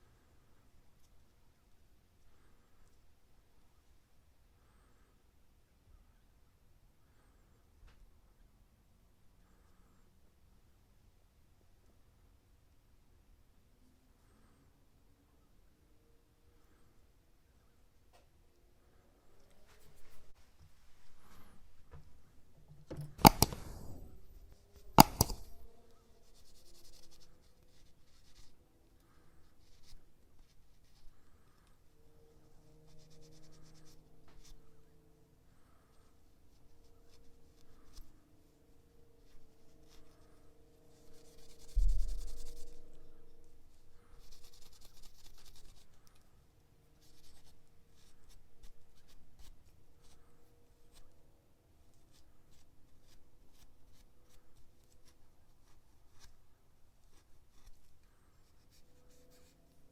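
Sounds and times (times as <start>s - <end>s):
faint rubbing: 19.3s - 51.3s
scrubbing on metal pliers: 23.1s - 24.1s, 24.9s - 25.6s.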